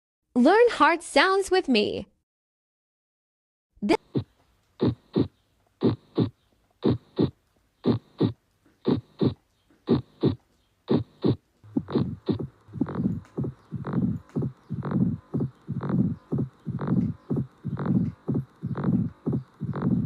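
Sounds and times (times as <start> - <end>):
heartbeat through a stethoscope: 4.0 - 20.0.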